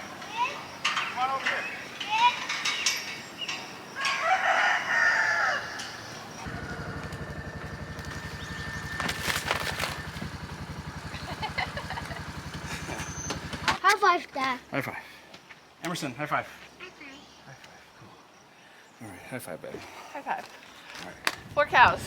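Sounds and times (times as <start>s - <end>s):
rooster crowing: 3.9s - 8.7s
engine idling: 6.4s - 13.8s.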